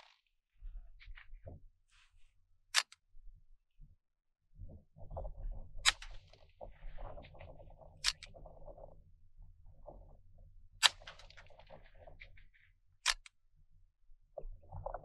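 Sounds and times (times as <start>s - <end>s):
rifle action handling noise: 8.0s - 8.3s, 13.0s - 13.3s.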